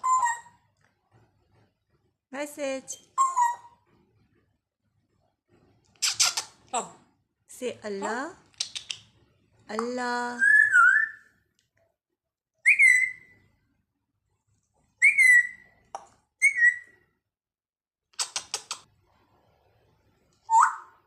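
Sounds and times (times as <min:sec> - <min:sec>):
parrot whistling: 0:00.0 - 0:00.5, 0:10.4 - 0:11.3, 0:12.6 - 0:13.4, 0:15.0 - 0:15.7, 0:16.4 - 0:17.0, 0:20.5 - 0:21.0
parrot clicks: 0:08.5 - 0:09.1, 0:18.2 - 0:18.8.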